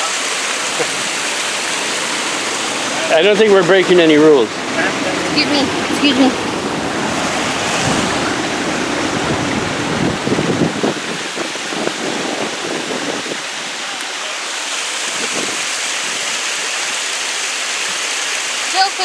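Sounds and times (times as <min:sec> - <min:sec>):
water rushing: 0:00.0 - 0:19.0
wind rumbling on microphone: 0:00.6 - 0:14.0, 0:15.1 - 0:16.4.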